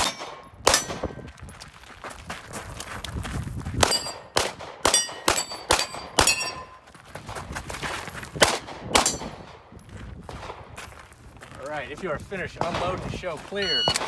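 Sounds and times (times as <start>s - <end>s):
steel plate clanging: 4.9s - 6.8s
rapid gunshots: 8.4s - 9.6s.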